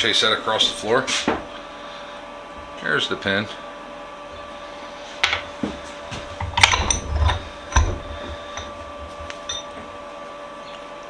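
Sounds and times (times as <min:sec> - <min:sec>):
steady hum: 0:00.0 - 0:11.0
metal parts knocking and clinking: 0:05.2 - 0:09.9.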